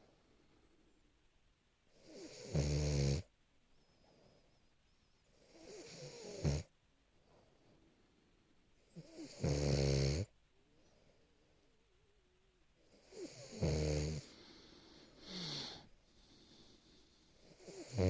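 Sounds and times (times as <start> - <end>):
dog snoring: 1.9 - 3.3, 5.4 - 6.7, 8.9 - 10.3, 12.8 - 15.8, 17.4 - 18.0.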